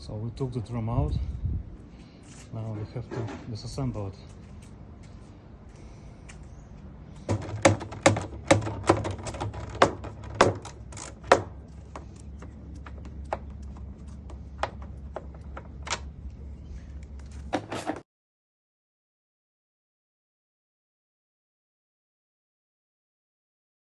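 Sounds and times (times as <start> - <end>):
low steady hum: 0.0 - 18.0
tools knocking on metal: 7.3 - 12.1.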